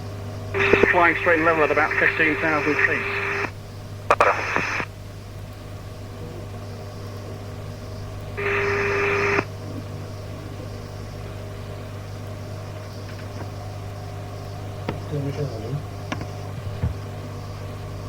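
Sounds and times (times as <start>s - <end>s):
radio hum and hiss: 0.0s - 18.0s
burst of static with tone: 0.6s - 4.9s, 8.4s - 9.5s.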